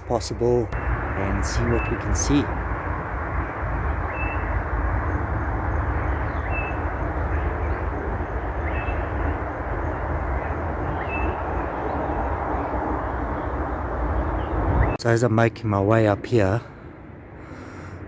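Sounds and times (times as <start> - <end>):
heavy low rumble: 0.0 - 15.0
outdoor rushing noise: 0.0 - 18.0.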